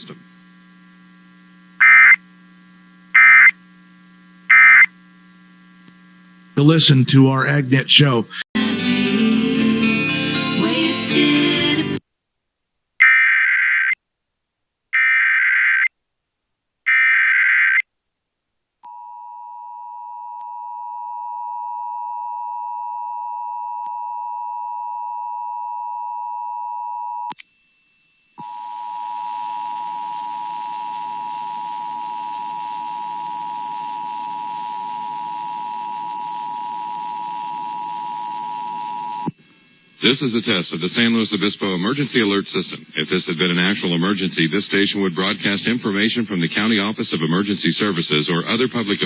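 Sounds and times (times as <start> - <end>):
digital data bursts: 1.8 - 2.2, 3.2 - 3.6, 4.5 - 4.9.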